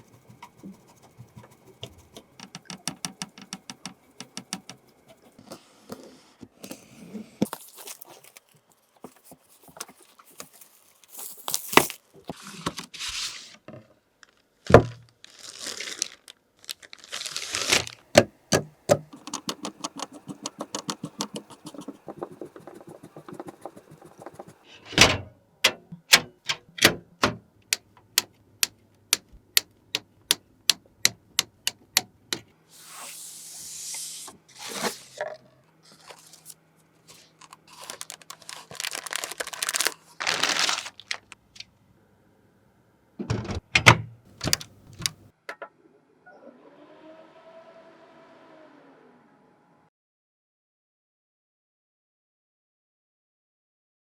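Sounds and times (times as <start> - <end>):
rustling: 7.5 - 12.3, 35.8 - 41.4
hard objects clicking and scraping: 19.0 - 24.7.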